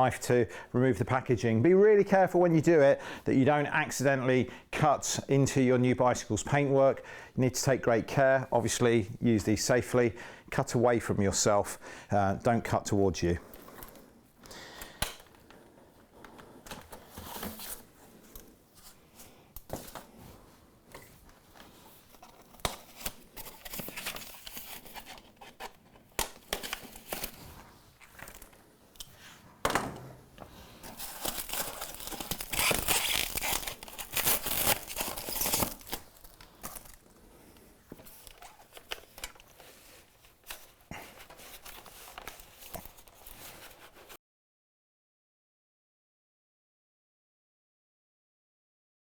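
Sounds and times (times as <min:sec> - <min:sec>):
wrapping crinkling and tearing: 0:21.3 - 0:29.1, 0:30.6 - 0:37.4, 0:38.1 - 0:44.2.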